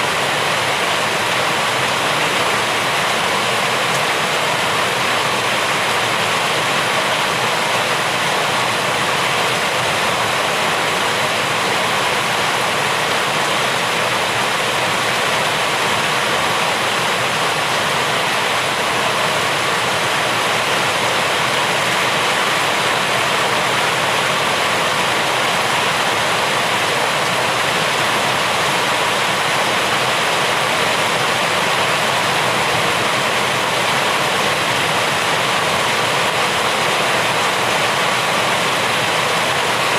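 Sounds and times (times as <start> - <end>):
heavy steady rain: 0.0 - 39.9.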